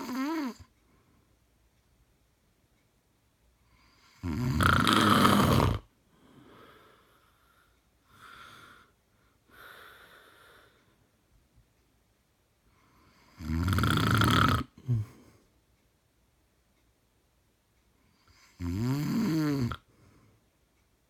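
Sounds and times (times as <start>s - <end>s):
man snoring: 0.0s - 0.7s, 3.9s - 5.9s, 13.1s - 15.2s, 18.3s - 19.9s.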